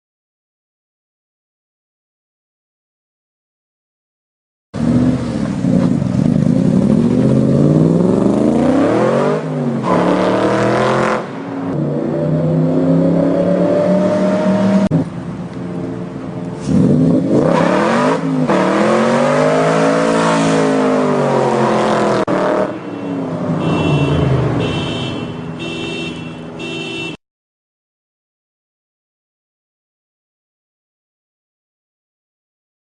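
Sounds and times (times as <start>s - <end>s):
car engine revving hard: 6.7s - 11.3s, 12.0s - 14.9s, 16.7s - 22.7s
car alarm pulses: 22.6s - 27.2s.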